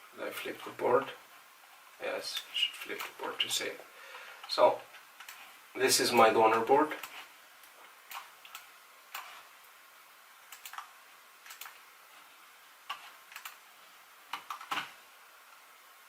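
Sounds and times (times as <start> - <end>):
computer mouse clicks: 5.2 - 5.5, 7.0 - 9.4, 10.5 - 11.9, 12.9 - 13.6, 14.3 - 14.9.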